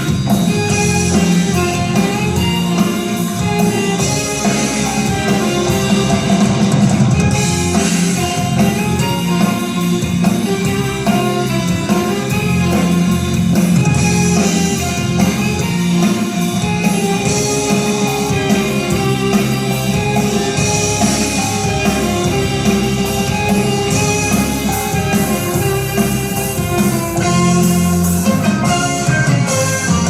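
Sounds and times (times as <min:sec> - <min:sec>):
music with guitar and drums: 0:00.0 - 0:30.0.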